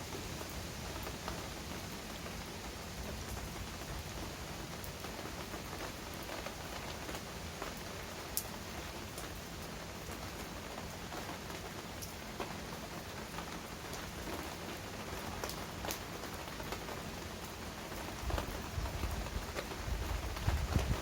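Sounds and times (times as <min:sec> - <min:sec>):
heavy rain falling: 0:00.0 - 0:21.0
raindrops tapping: 0:13.3 - 0:21.0.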